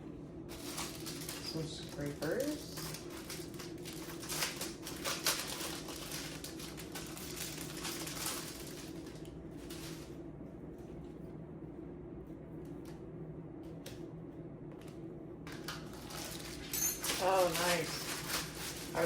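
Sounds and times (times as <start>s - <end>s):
packaging rustling and clicking: 0.5s - 10.2s, 14.8s - 19.0s.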